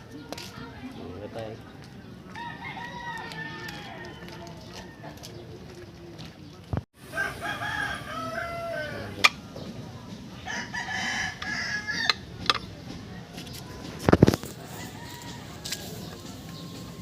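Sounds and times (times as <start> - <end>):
rooster crowing: 7.0 - 9.2, 10.5 - 12.2, 14.6 - 15.9.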